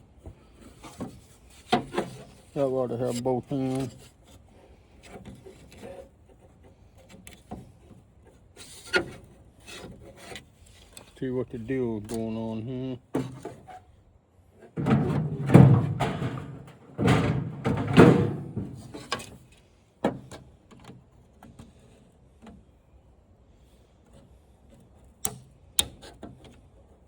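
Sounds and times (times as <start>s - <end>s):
plastic scraping and creaking: 14.7s - 19.6s
sharp clicks and knocks: 14.8s - 19.4s.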